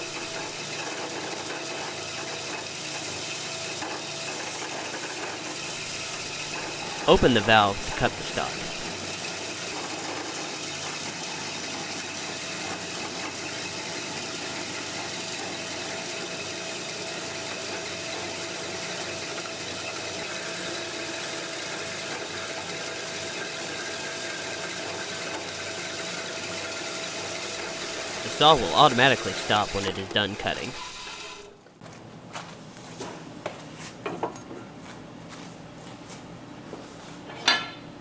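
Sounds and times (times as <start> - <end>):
coolant flowing: 8.7 - 29.8
bandsaw cutting metal: 25.2 - 31.5.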